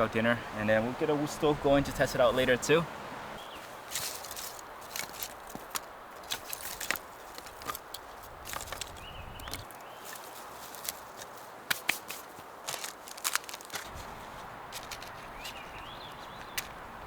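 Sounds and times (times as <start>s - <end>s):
wind hiss: 0.0s - 9.7s, 13.7s - 17.0s
dry twigs cracking and crunching: 3.4s - 17.0s.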